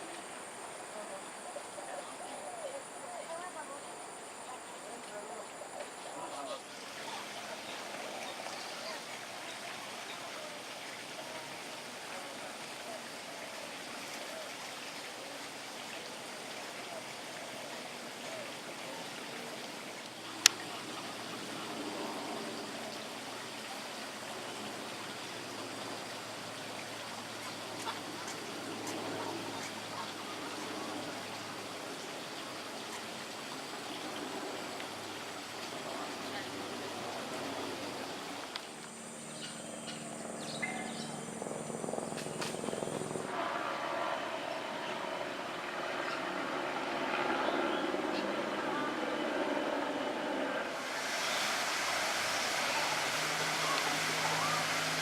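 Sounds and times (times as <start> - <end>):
running water rushing: 0.0 - 47.3, 47.9 - 55.0
faint high ticks: 20.0 - 20.7.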